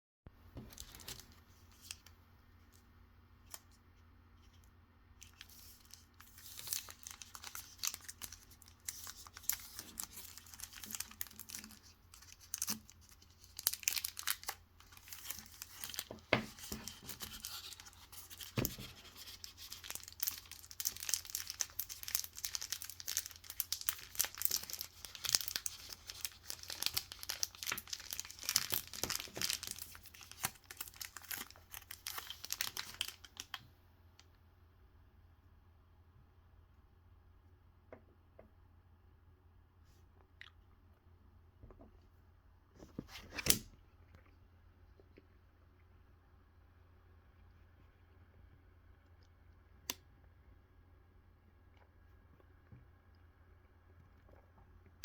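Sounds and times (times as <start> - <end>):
wrapper crinkling and tearing: 5.2 - 33.6.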